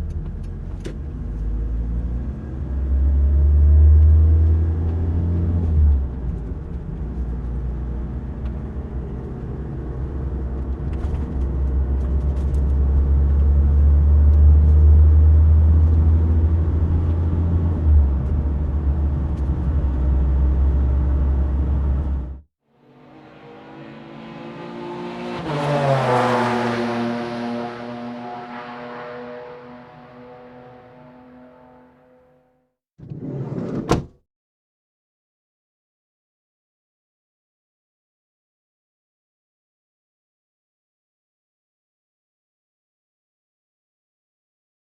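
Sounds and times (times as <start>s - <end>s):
car engine low rumble: 0.0s - 22.4s
vehicle passing by: 22.9s - 32.2s.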